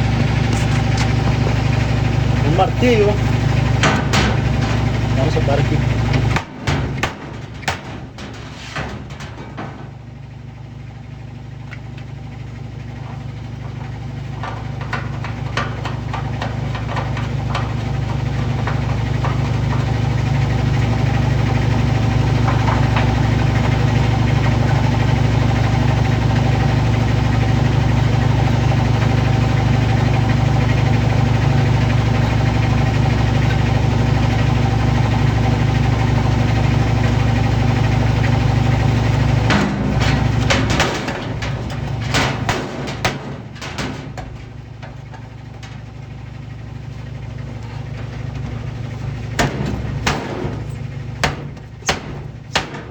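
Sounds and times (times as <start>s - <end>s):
clicks and knocks: 0.0s - 10.2s, 11.6s - 26.5s, 37.8s - 52.9s
washing machine motor hum: 0.0s - 52.9s.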